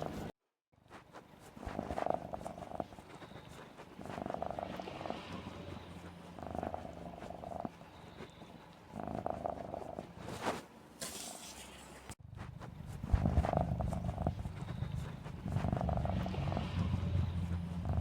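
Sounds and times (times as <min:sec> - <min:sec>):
cat purring: 0:00.0 - 0:00.3, 0:01.2 - 0:10.6, 0:12.7 - 0:18.0.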